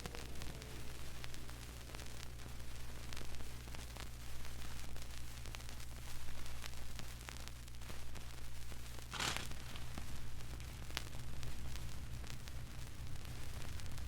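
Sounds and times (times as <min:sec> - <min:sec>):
vinyl crackling clicks: 0:00.0 - 0:14.0
vinyl hiss and hum: 0:00.0 - 0:14.0
short burst of noise: 0:09.1 - 0:09.8.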